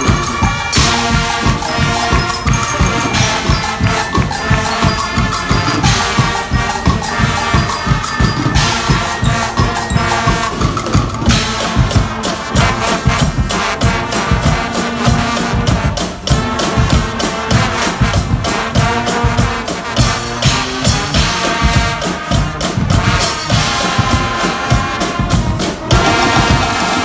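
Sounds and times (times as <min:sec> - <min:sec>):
brass band playing: 0:00.0 - 0:27.0
loud driving drum beat: 0:00.0 - 0:27.0.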